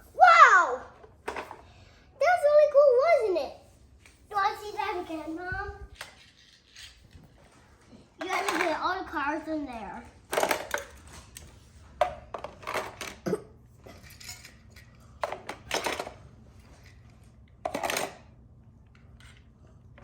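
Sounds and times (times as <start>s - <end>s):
toy cars clattering and clinking: 6.0s - 7.6s, 8.2s - 9.0s, 10.3s - 11.4s, 12.3s - 13.2s, 13.8s - 17.0s, 17.7s - 18.3s.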